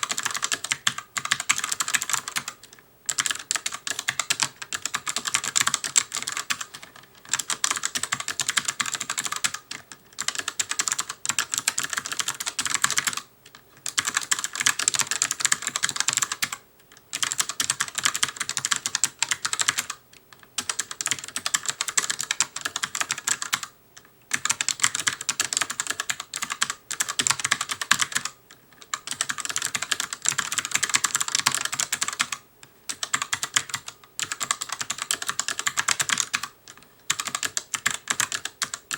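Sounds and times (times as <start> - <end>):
fast typing on clicky keyboard: 0.0 - 38.9.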